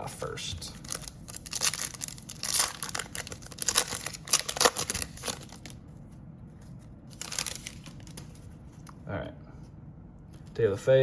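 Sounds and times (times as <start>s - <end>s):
cellophane wrapper crinkling and tearing: 0.8s - 5.8s, 7.1s - 8.3s.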